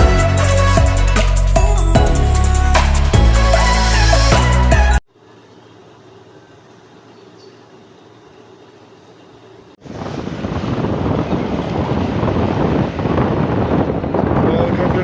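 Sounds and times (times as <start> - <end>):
wind buffeting microphone: 9.8 - 15.0.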